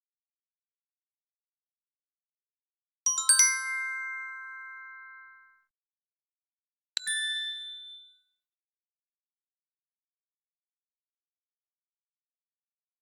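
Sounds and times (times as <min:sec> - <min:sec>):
bright tinkling chime: 0:07.0 - 0:08.2.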